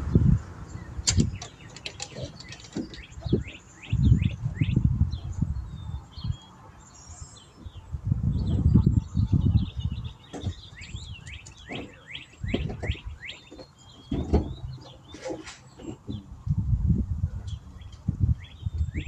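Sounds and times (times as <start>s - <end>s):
low rumbling bumps: 0.0s - 5.9s, 7.5s - 19.0s
songbird singing: 0.0s - 19.0s
bird chirps: 0.1s - 16.4s, 17.4s - 19.0s.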